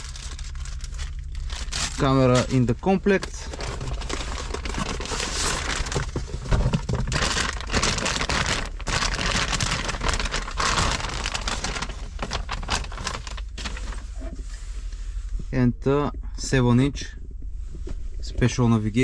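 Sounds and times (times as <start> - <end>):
plastic packaging crinkling: 0.0 - 14.3.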